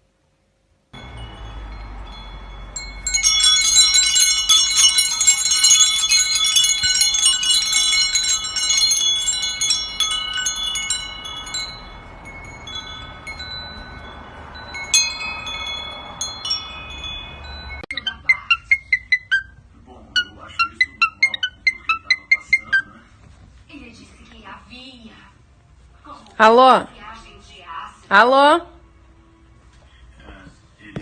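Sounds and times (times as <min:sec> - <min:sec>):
metal chimes tinkling: 0:01.0 - 0:19.1.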